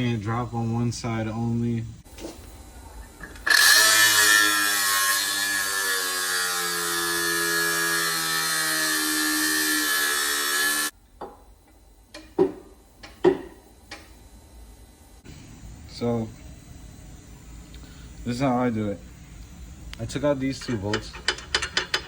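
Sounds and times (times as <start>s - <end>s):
power tool running: 3.2s - 10.9s
sharp knocks: 12.2s - 13.6s.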